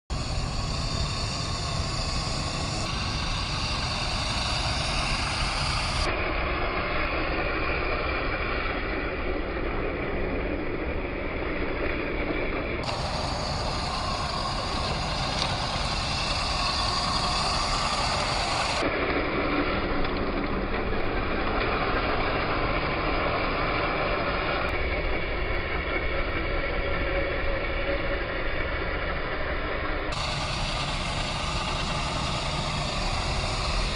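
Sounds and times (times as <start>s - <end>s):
tyre and ground noise: 0.1s - 24.7s
electric motor whine: 0.1s - 33.9s.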